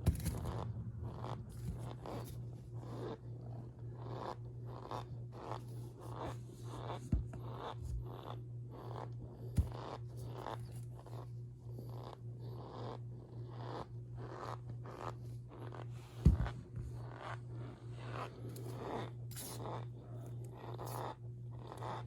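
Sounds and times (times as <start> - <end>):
low hum: 0.0 - 10.2.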